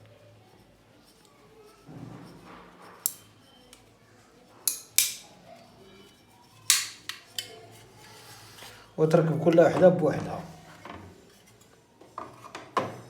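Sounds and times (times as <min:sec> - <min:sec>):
metal bracket clacking: 0:06.7 - 0:07.6.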